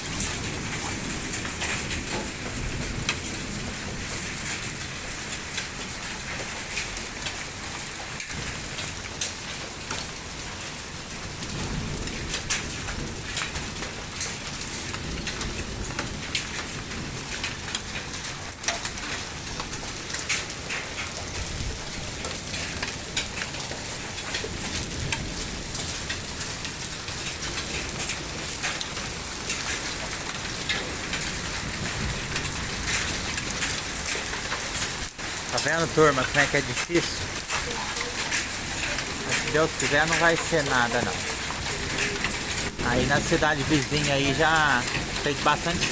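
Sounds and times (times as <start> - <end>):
hailstones ticking on hard surfaces: 0.0 - 45.9
heavy rain hissing: 30.6 - 45.9.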